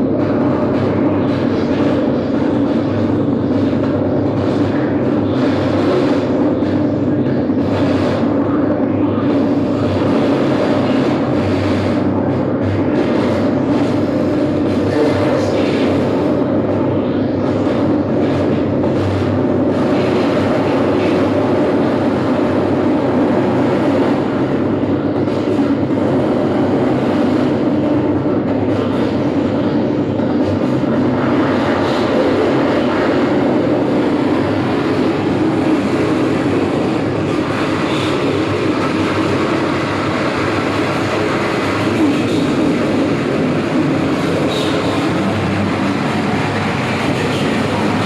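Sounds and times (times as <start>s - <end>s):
steady low drone: 0.0s - 48.0s
wall of electronic noise: 0.0s - 48.0s.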